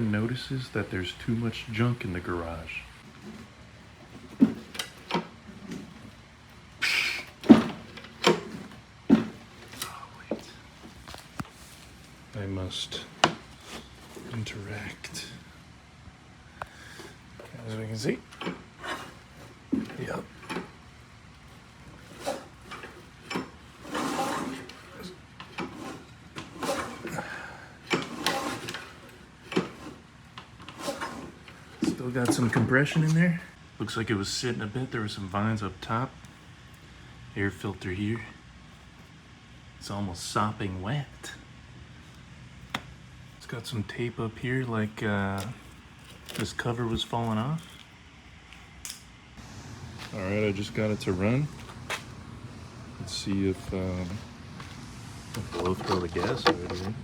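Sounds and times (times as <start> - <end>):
recoil starter rope pulls: 21.8 - 30.0.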